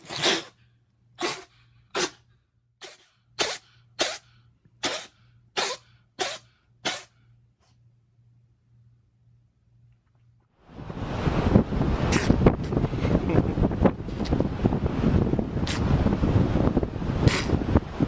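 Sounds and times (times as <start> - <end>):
animal sneezing: 0.0 - 0.6, 1.2 - 2.2, 2.8 - 7.2, 17.3 - 17.5.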